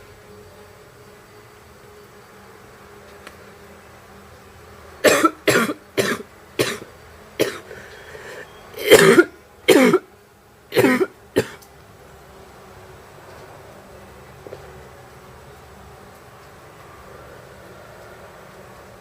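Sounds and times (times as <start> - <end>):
woman coughing: 5.0 - 6.8, 7.4 - 7.7, 8.8 - 10.0, 10.8 - 11.6.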